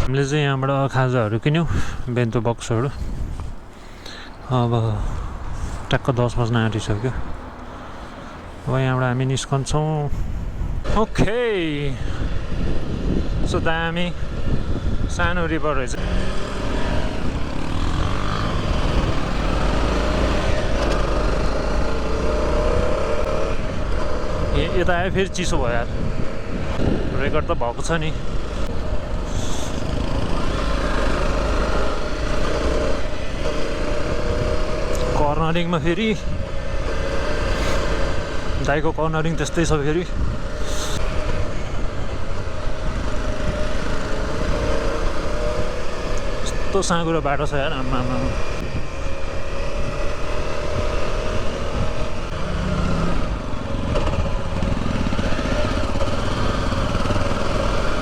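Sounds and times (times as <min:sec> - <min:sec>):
wind on microphone: 0:01.6 - 0:46.8, 0:48.1 - 0:58.0
motorcycle engine running: 0:16.0 - 0:24.9, 0:27.8 - 0:39.4, 0:40.0 - 0:58.0.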